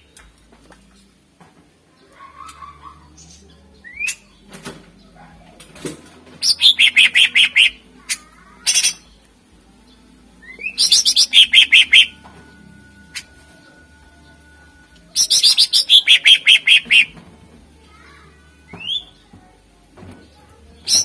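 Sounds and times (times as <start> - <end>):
bird singing: 2.0 - 5.6, 6.4 - 17.2, 18.6 - 19.4, 20.2 - 21.0
harsh bird call: 6.4 - 9.1, 10.4 - 12.2, 15.2 - 17.2.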